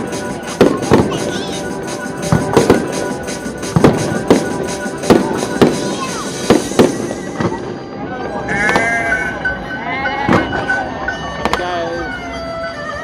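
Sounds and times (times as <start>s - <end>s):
fireworks exploding with echo: 0.0s - 8.0s.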